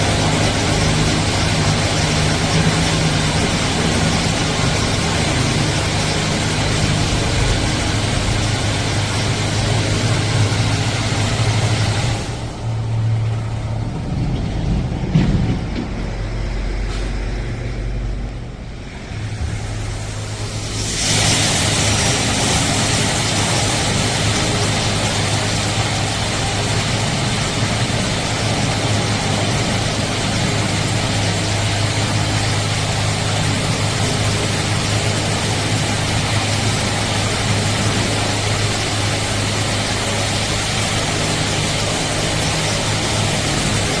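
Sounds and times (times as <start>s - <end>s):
car wash jets rushing: 0.0s - 17.1s, 18.3s - 44.0s
low machine hum: 0.0s - 44.0s.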